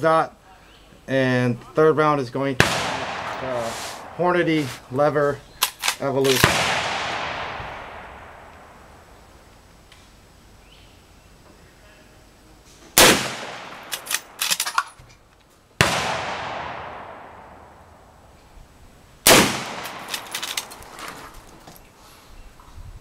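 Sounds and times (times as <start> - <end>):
gunshots: 2.6 - 4.8, 5.8 - 8.8, 13.0 - 14.6, 15.8 - 17.8, 19.2 - 20.9
sharp small clicks: 5.6 - 6.6, 13.6 - 15.5, 19.6 - 21.8.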